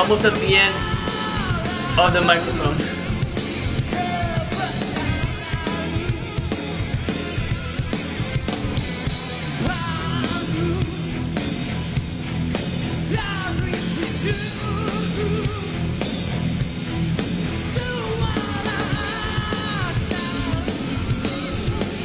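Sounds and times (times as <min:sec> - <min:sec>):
man singing rock vocal: 0:00.0 - 0:06.9, 0:09.5 - 0:11.5, 0:12.9 - 0:16.2, 0:17.6 - 0:22.0
live rock band playing: 0:00.0 - 0:22.0.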